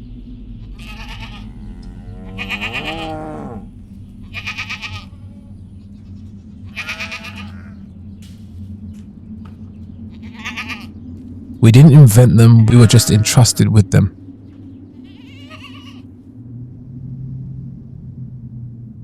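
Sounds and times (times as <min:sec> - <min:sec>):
low steady hum: 0:00.0 - 0:19.0
sheep and goats bleating: 0:00.7 - 0:05.3, 0:06.7 - 0:07.8, 0:10.2 - 0:10.9, 0:12.6 - 0:13.4, 0:15.0 - 0:16.0.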